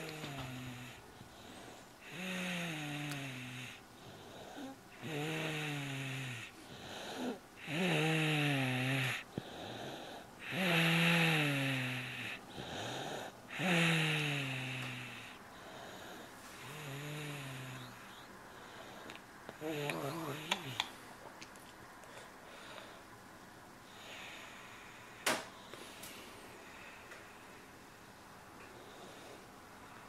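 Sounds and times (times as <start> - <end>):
snoring: 0.0 - 1.0, 2.0 - 15.4, 16.6 - 18.2
quiet breaths: 0.0 - 30.0.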